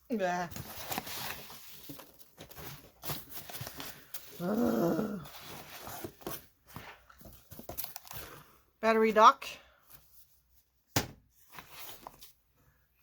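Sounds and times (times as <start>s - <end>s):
packaging rustling: 0.5s - 4.5s, 5.2s - 8.6s.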